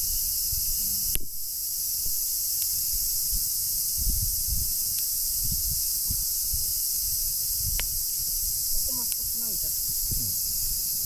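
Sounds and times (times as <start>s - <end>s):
insects chorus: 0.0s - 11.0s
faint ticks: 0.7s - 1.3s, 2.5s - 2.8s, 4.9s - 5.1s, 7.7s - 9.3s.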